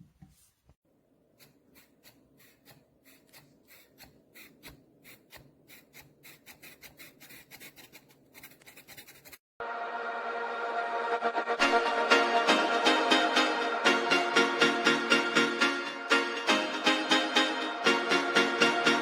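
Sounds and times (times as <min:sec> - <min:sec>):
low hum: 0:09.6 - 0:16.0.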